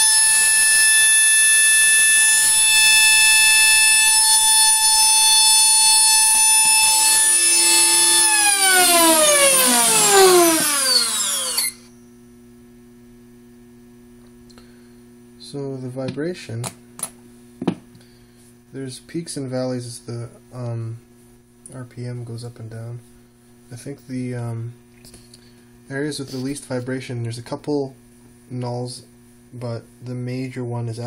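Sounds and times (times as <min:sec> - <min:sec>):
spindle motor whining: 0:00.0 - 0:11.9
low steady hum: 0:02.3 - 0:31.0.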